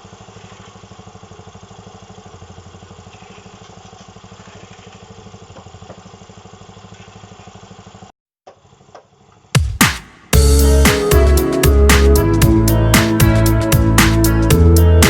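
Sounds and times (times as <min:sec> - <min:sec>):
cement mixer engine running: 0:00.0 - 0:08.1.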